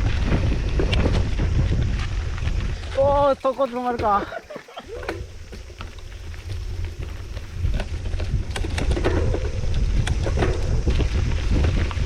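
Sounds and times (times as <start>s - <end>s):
bike rattling and knocking: 0.0s - 12.0s
tyres crunching on dirt: 0.0s - 12.0s
wind buffeting microphone: 0.0s - 12.0s.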